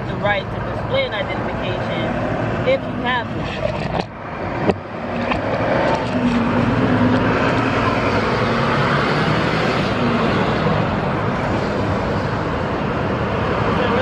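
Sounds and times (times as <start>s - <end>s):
vehicle rushing noise: 0.6s - 14.0s.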